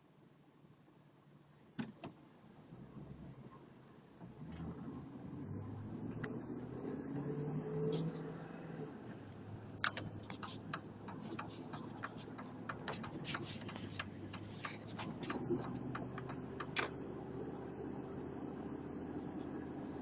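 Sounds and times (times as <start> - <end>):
vehicle hum: 0.0 - 20.0
quick clicking rattle: 9.8 - 17.0.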